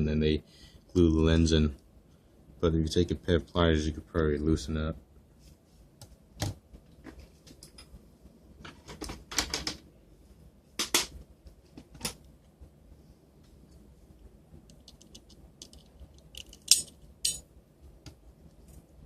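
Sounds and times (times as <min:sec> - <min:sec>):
clicks of small parts: 0:14.7 - 0:17.4.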